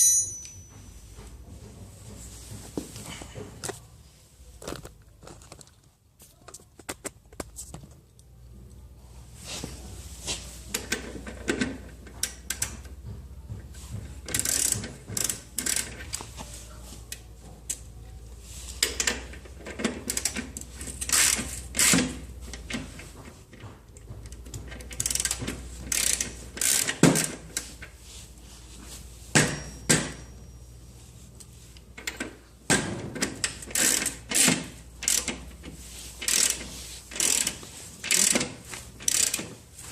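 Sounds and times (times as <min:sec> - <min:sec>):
metallic clanks of tools and chain: 0:00.0 - 0:00.9.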